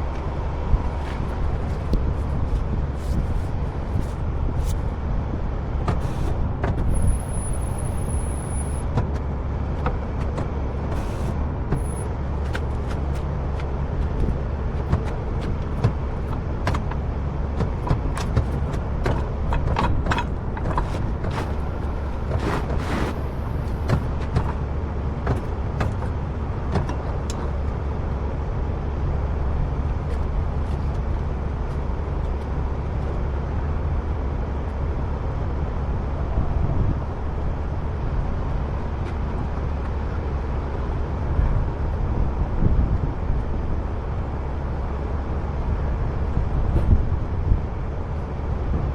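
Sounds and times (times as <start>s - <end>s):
truck diesel engine running: 6.9s - 14.8s, 18.5s - 25.2s.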